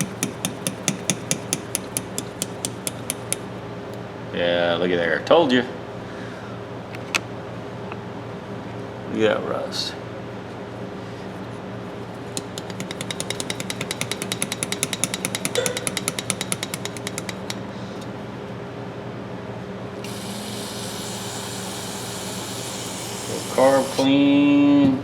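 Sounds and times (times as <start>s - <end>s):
aerosol can spraying: 20.0s - 24.1s.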